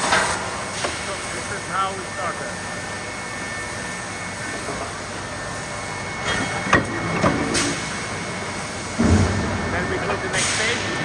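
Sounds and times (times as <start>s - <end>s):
steady machinery noise: 0.0s - 11.0s
sharp metallic bang: 9.0s - 10.8s.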